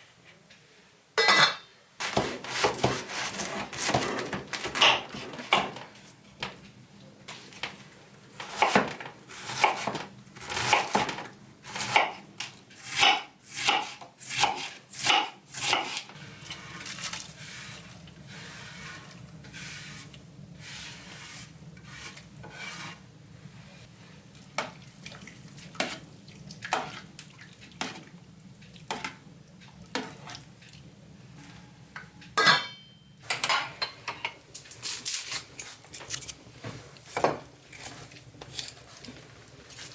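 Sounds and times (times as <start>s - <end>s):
regular kitchen strokes: 0.0s - 39.9s
cookware and cutlery clinking: 1.2s - 2.3s, 31.4s - 35.8s.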